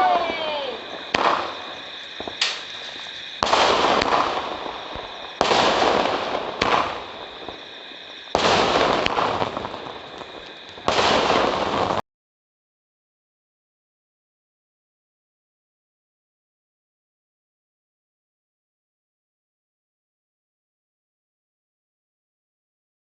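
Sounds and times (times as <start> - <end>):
fireworks bangs: 0.0 - 12.0.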